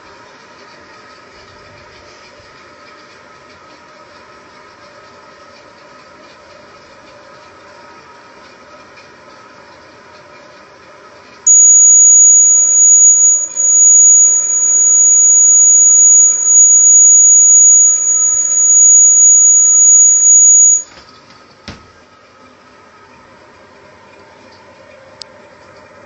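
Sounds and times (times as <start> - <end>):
high-pitched buzzer tone: 11.5 - 20.9.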